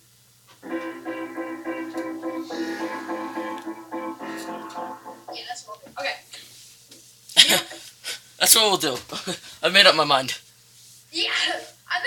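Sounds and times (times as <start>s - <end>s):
guitar picking repeated notes: 0.6s - 5.5s.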